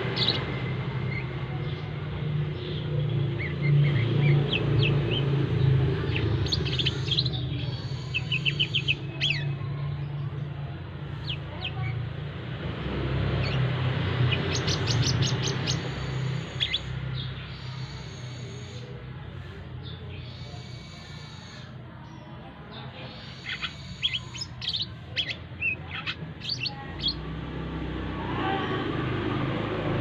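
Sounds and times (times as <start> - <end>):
low road traffic rumble: 0.0 - 30.0
sunbird chirping: 2.7 - 9.6, 13.4 - 19.0, 22.9 - 27.2.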